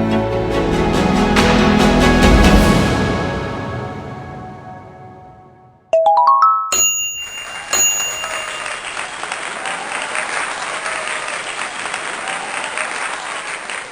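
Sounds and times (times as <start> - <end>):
background music: 0.0 - 6.8
rising run of chime notes: 6.0 - 9.2
people clapping: 7.2 - 13.9.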